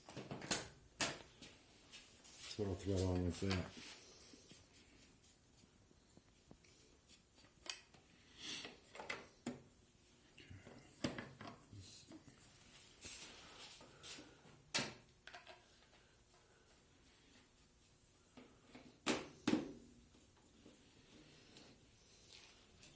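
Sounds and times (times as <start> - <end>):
plastic pipe fittings clicking and knocking: 14.7 - 16.0.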